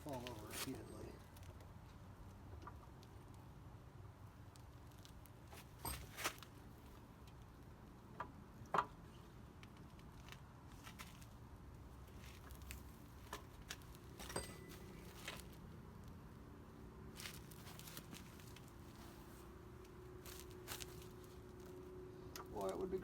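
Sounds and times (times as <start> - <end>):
clicks and knocks of wheel parts: 12.2 - 15.6.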